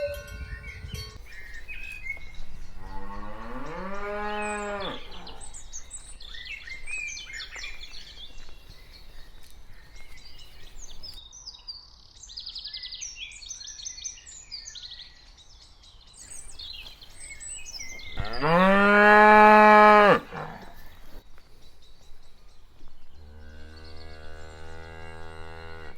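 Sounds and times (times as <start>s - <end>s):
small birds chirping: 0.0s - 25.9s
cow mooing: 2.7s - 5.7s, 18.2s - 20.9s, 23.3s - 25.9s.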